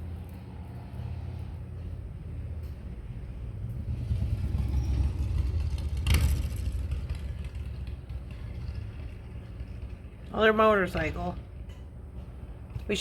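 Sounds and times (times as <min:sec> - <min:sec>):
motorcycle passing by: 0:00.0 - 0:11.6.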